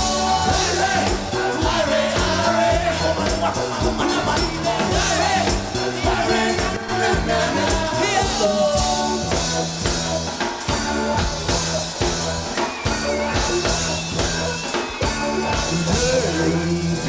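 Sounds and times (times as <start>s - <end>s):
person singing: 0.0s - 9.6s
live reggae band playing: 0.0s - 17.0s.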